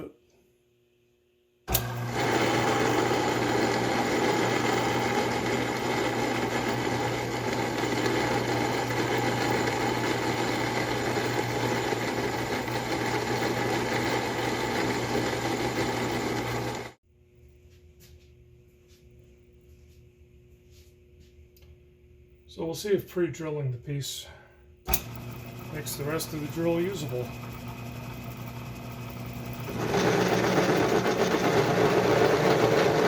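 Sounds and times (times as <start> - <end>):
metal lathe motor hum: 1.7 - 17.0, 24.9 - 33.0.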